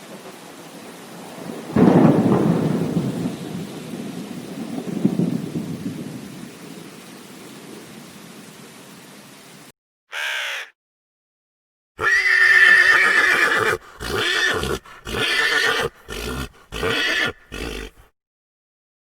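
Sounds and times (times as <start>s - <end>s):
horse neighing: 12.0s - 18.1s.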